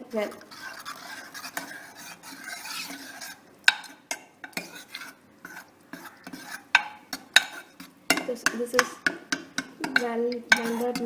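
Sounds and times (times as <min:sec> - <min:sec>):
spoon scraping in pot: 0:00.0 - 0:11.0
spoon knocking against pot: 0:03.7 - 0:04.7, 0:06.0 - 0:11.0.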